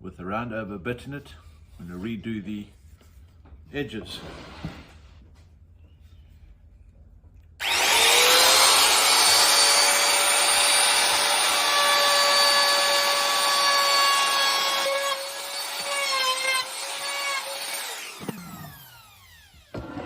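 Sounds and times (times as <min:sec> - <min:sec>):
trim router whining: 0:07.6 - 0:20.0.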